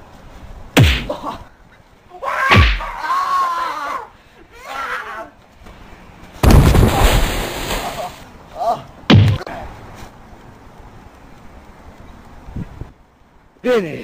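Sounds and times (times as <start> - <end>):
sharp hit smacks: 0.8 - 1.2, 2.5 - 3.0, 9.1 - 9.5.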